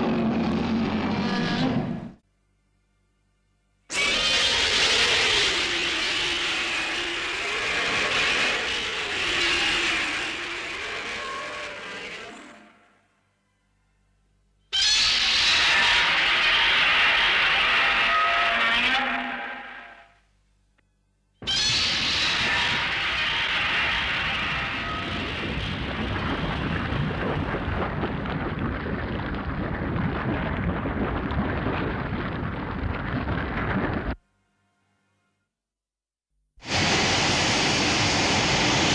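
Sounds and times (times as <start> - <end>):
low rumbling crackling noise: 0.0 - 3.8, 22.2 - 34.2
rushing noise with wavering tone: 36.6 - 38.9.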